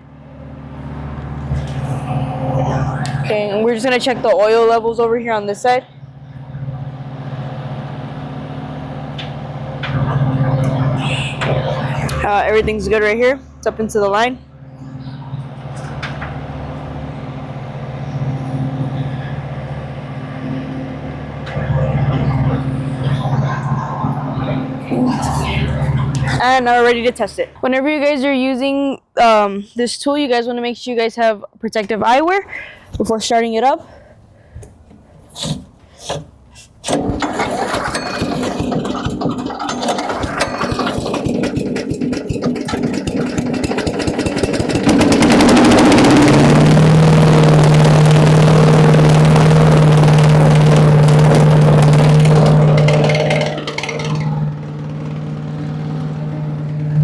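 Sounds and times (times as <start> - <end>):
small gas engine running: 0.0 - 4.5, 36.9 - 57.0
engine humming steadily: 0.0 - 28.6, 33.9 - 57.0
recoil cord pulls: 36.9 - 46.7.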